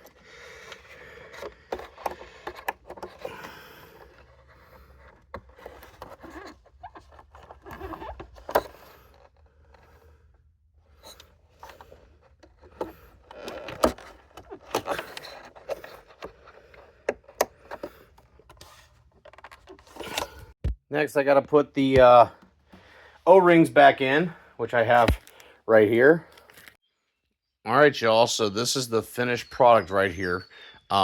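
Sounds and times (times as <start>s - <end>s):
plastic parts clicking and scraping: 0.0s - 20.6s.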